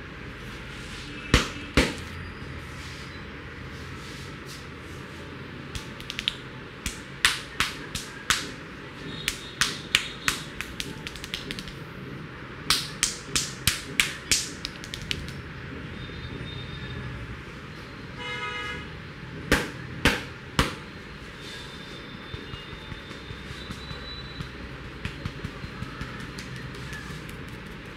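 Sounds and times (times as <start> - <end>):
hands clapping and slapping head: 5.7 - 8.6, 9.2 - 11.8, 12.7 - 15.4, 25.0 - 27.9.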